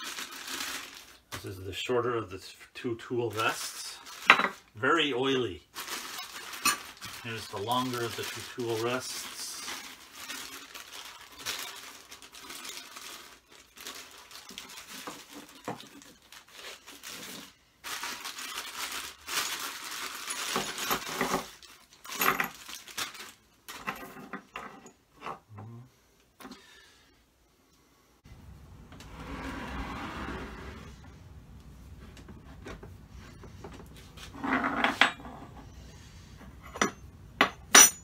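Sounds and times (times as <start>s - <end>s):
wrapping crinkling: 0.0s - 2.0s, 3.3s - 23.8s
metal parts clinking and clattering: 20.1s - 25.5s, 36.5s - 38.0s.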